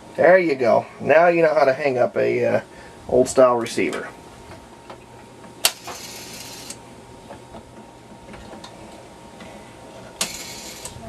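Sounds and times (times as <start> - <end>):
telephone mechanical whirr: 5.6 - 6.8, 10.1 - 11.0.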